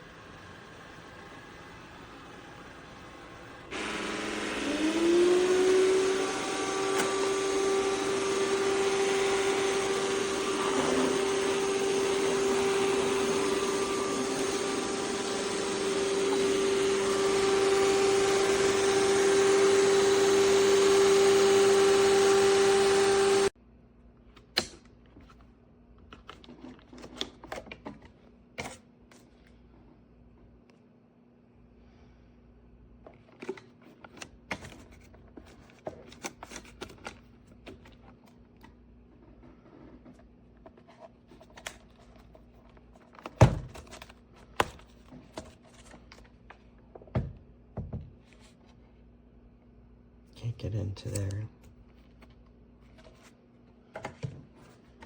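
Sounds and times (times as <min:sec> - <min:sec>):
robot vacuum running: 0:00.0 - 0:23.5.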